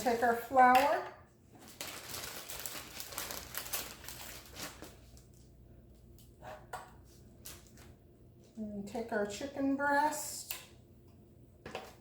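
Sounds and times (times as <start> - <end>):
flour bag crinkling: 1.5 - 5.4.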